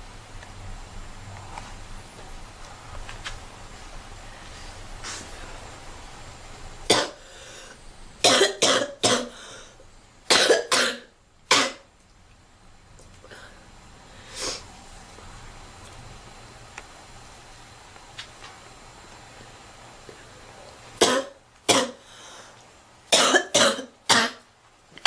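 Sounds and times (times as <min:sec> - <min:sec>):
girl coughing: 0:06.9 - 0:07.2, 0:08.2 - 0:09.4, 0:10.3 - 0:11.8, 0:21.0 - 0:22.0, 0:23.1 - 0:24.4.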